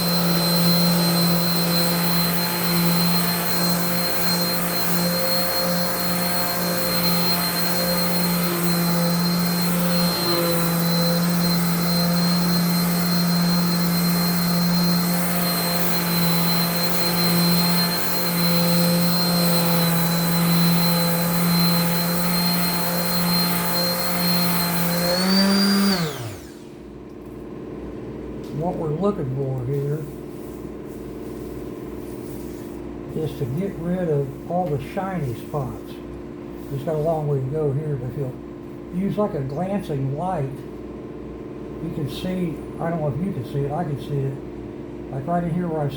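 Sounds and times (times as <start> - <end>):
electric sander whining: 0.0 - 26.7.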